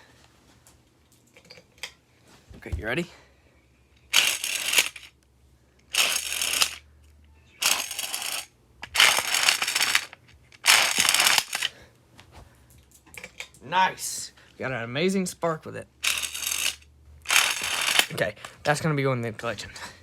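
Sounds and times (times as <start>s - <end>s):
spinning top launcher whirring: 4.1s - 5.1s, 5.9s - 6.8s, 7.6s - 11.7s, 16.0s - 18.2s.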